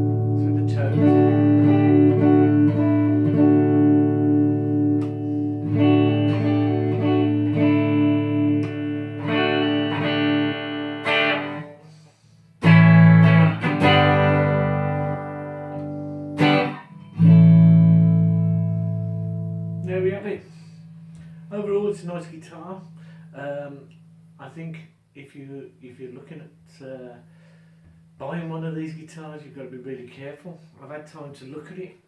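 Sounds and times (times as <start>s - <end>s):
electric guitar chords strummed: 0.0s - 11.8s, 12.6s - 21.4s.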